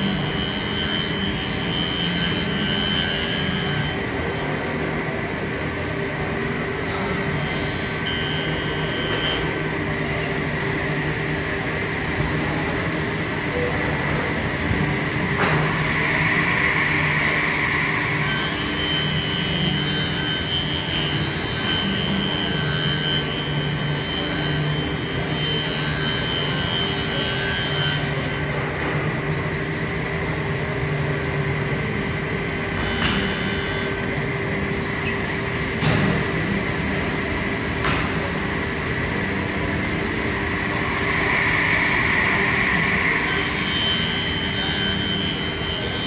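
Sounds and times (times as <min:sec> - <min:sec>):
high whine: 0:08.0 - 0:25.6, 0:28.2 - 0:46.0
woodworking power tool humming: 0:38.5 - 0:46.0.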